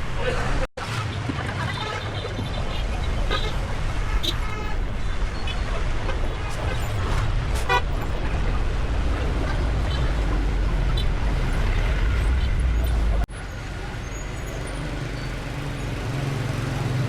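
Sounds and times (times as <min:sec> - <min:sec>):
traffic engines rumbling: 0:00.0 - 0:17.0
car horn toots: 0:07.6 - 0:07.9.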